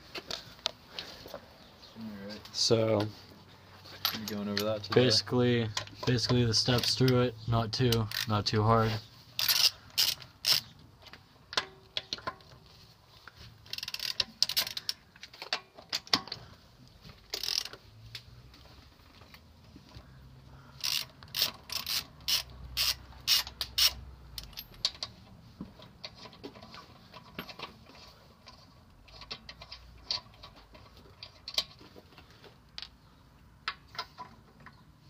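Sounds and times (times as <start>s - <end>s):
hand tools clinking: 3.9s - 7.2s, 20.8s - 25.3s
ratchet wrench clicking: 7.9s - 8.3s, 9.4s - 10.7s, 13.7s - 15.0s, 17.3s - 17.8s, 20.8s - 25.1s.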